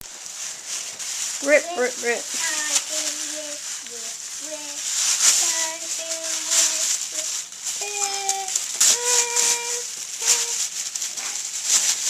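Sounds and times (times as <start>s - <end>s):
wrapping paper ripping: 0.0s - 12.0s.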